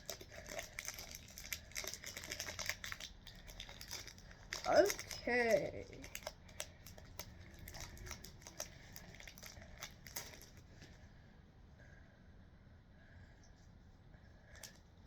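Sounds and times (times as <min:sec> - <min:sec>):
foil wrapper crinkling: 0:00.0 - 0:11.0.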